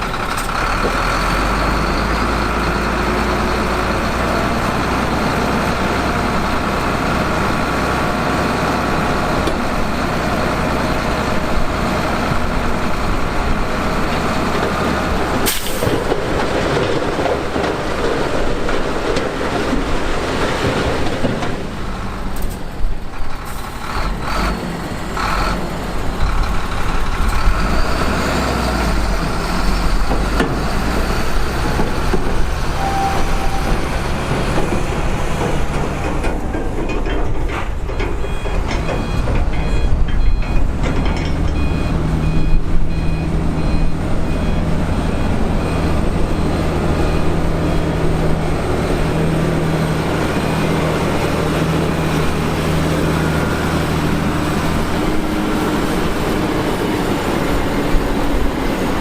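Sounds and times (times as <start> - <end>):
heavy diesel machinery working: 0.0 - 59.0
reversing alarm beeping: 32.7 - 34.8, 38.2 - 48.4.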